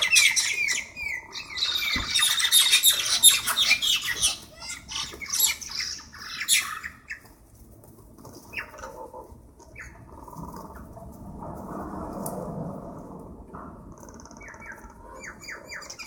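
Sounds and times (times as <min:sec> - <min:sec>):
birds squawking harshly: 0:00.0 - 0:07.3.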